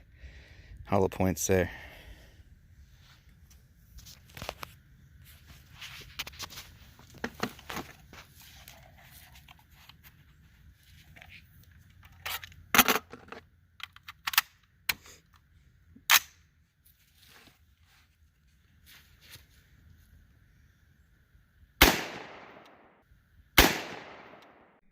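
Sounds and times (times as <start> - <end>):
gun handling clicks: 13.8 - 16.4
rifle shots: 21.8 - 23.0, 23.6 - 24.8.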